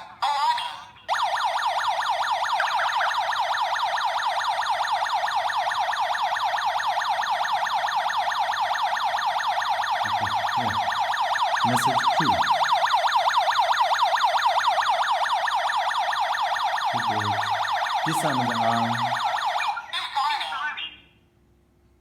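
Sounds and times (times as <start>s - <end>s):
alarm siren sweeping: 0.0s - 20.9s
short broken alarm tone: 9.4s - 12.8s.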